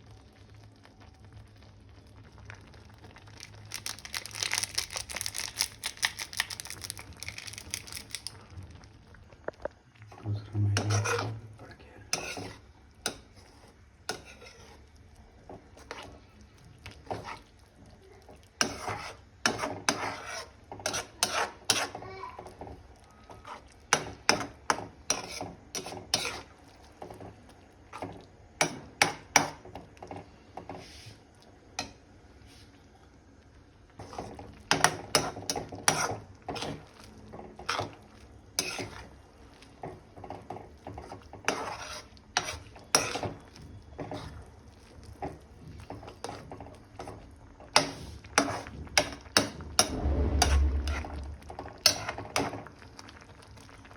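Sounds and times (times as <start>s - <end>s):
spoon scraping a cooking pan: 10.8s - 11.5s, 12.1s - 16.2s, 17.0s - 17.5s, 18.5s - 22.0s, 23.4s - 27.3s, 27.9s - 31.1s, 34.0s - 52.7s.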